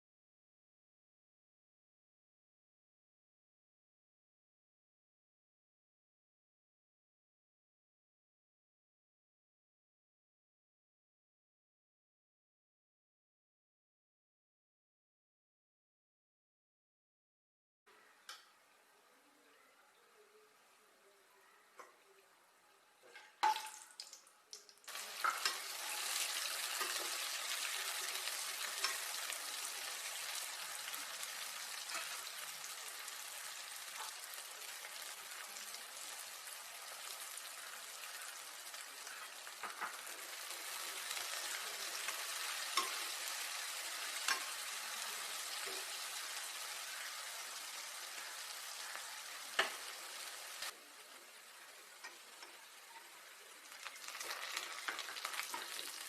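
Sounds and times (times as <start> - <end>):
food sizzling in hot oil: 24.8 - 56.0.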